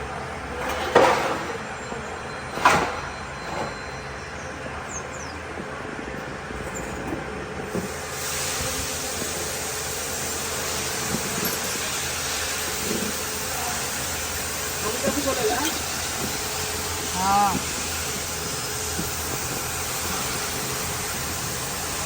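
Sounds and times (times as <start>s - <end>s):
engine running steadily: 0.0s - 22.0s
hiss: 7.7s - 22.0s.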